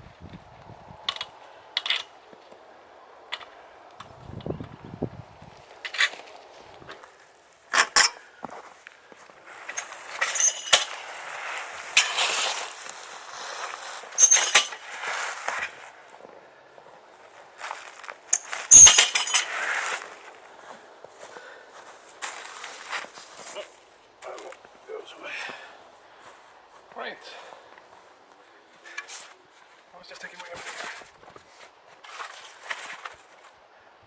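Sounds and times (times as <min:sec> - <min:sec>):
metallic clinks and rattles: 0:01.1 - 0:02.1, 0:09.7 - 0:11.1, 0:11.9 - 0:13.6, 0:14.2 - 0:14.9, 0:18.3 - 0:19.6
rustling: 0:05.4 - 0:16.3, 0:17.1 - 0:25.1, 0:27.7 - 0:33.6.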